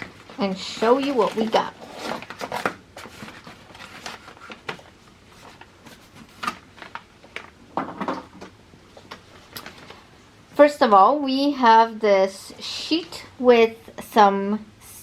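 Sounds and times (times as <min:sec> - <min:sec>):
packaging rustling: 0:00.0 - 0:07.7, 0:08.4 - 0:10.1.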